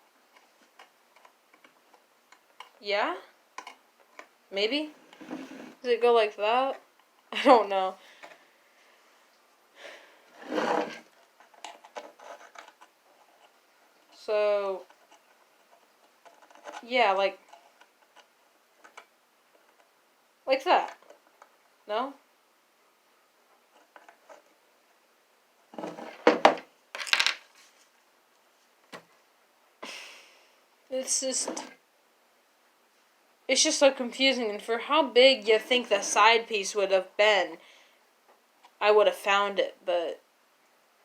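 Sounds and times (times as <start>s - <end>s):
soft rub or scrape: 5.0s - 5.8s, 10.3s - 11.2s
plastic pieces clattering: 27.0s - 27.5s.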